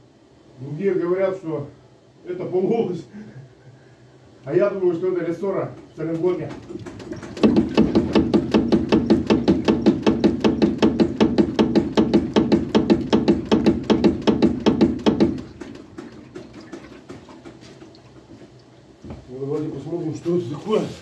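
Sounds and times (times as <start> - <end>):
rapid suspension knocking: 6.1 - 18.4.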